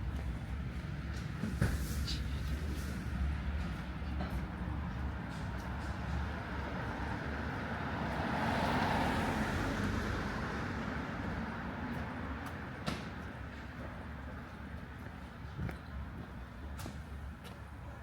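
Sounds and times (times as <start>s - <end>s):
low street rumble: 0.0s - 18.0s
vehicle passing by: 6.9s - 11.7s.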